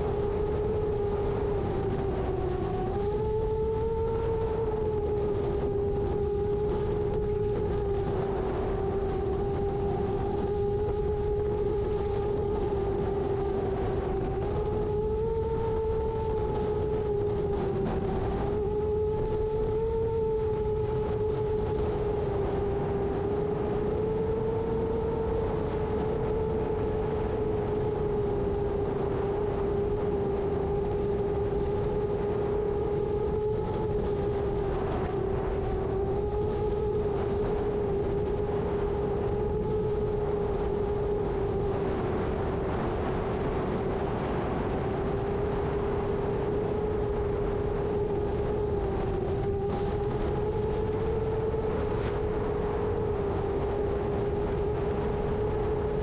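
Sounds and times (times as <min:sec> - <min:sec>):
drone motors whining: 0:00.0 - 0:56.0
strong wind rushing: 0:00.0 - 0:56.0.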